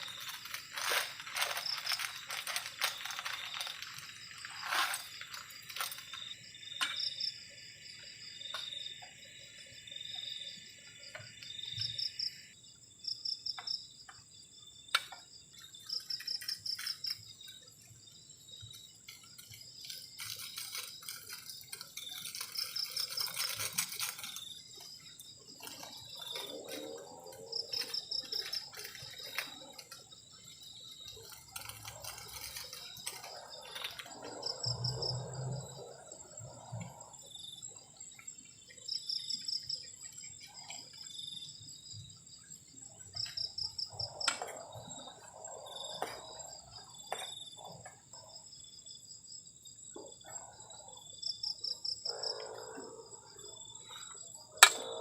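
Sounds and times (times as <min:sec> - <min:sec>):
crickets chirping: 0:00.0 - 0:55.0
high-pitched insect drone: 0:15.1 - 0:42.0, 0:50.3 - 0:55.0.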